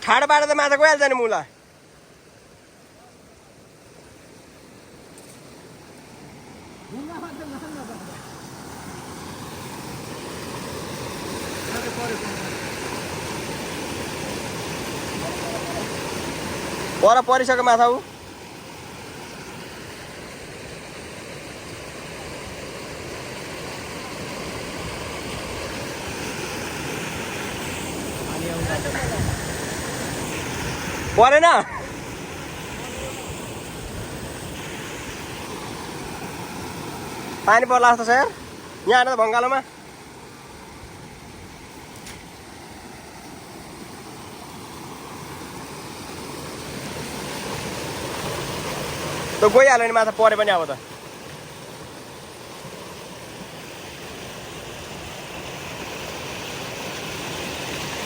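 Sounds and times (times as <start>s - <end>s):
river water rushing: 0.0s - 58.0s.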